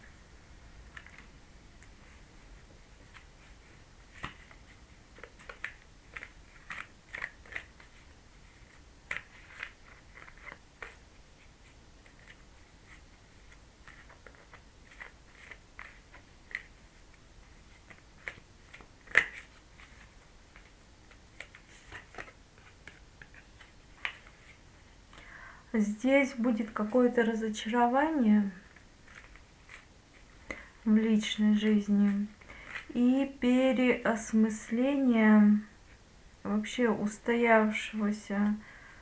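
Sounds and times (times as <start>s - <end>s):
cards being shuffled: 0.8s - 24.6s, 28.7s - 30.7s.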